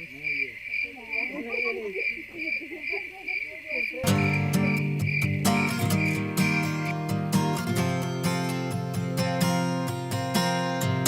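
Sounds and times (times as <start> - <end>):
crickets chirping: 0.0 - 11.0
acoustic guitar music: 4.0 - 11.0.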